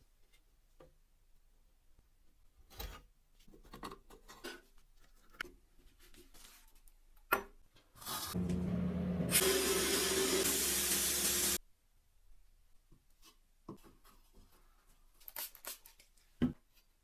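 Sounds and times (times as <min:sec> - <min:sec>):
machine hissing and humming: 0:08.4 - 0:11.6.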